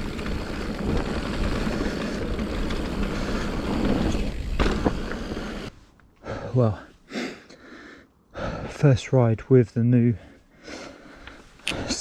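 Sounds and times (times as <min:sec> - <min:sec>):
bike rattles and knocks: 0:00.0 - 0:05.7
bike tyre rumble: 0:00.0 - 0:05.7.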